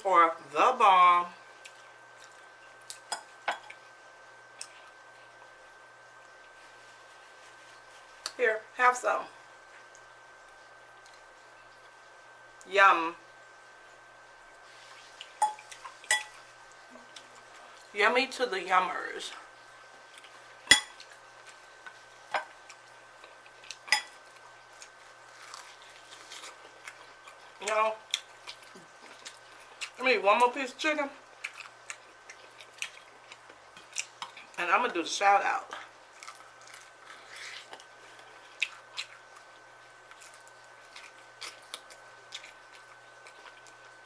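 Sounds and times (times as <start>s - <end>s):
cutlery clinking against a dish: 15.4s - 16.4s, 20.7s - 21.0s, 23.9s - 24.2s.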